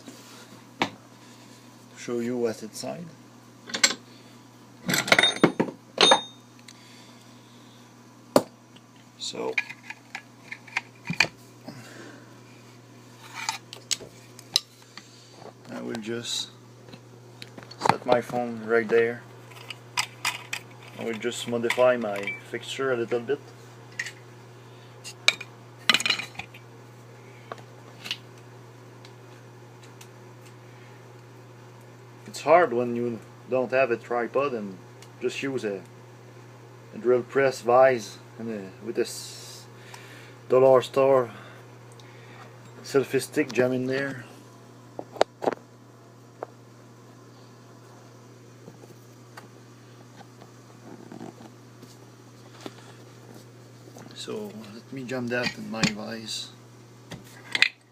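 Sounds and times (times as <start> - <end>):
steady low hum: 0.0 - 57.9
metal parts clinking and clattering: 4.8 - 6.3.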